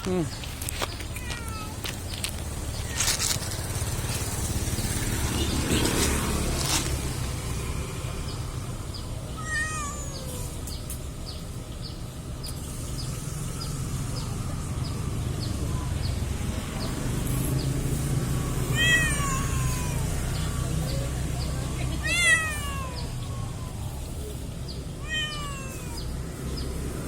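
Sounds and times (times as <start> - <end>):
cat meowing: 0.9 - 3.5, 9.3 - 10.6, 18.3 - 21.2, 21.8 - 24.1, 24.9 - 26.3.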